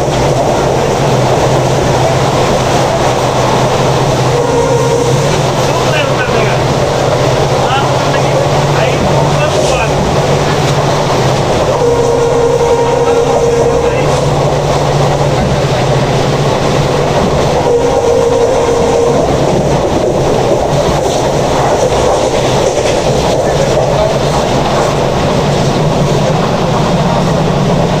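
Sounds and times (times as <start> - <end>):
train wheels rumbling on rail: 0.0 - 28.0
locomotive horn: 2.6 - 6.8, 11.6 - 15.5, 17.2 - 20.0.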